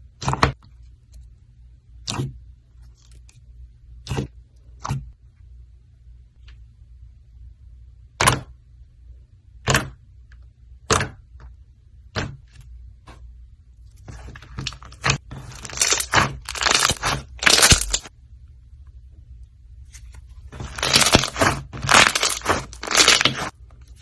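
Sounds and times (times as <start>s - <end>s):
slime crackling and popping: 14.6s - 18.1s, 20.6s - 23.5s.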